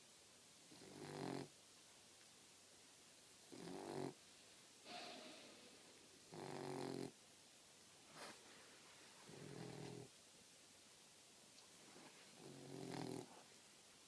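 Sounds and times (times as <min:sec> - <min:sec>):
puppy snoring: 0:00.7 - 0:01.5, 0:03.5 - 0:04.2, 0:06.2 - 0:07.2, 0:09.3 - 0:10.1, 0:12.4 - 0:13.4.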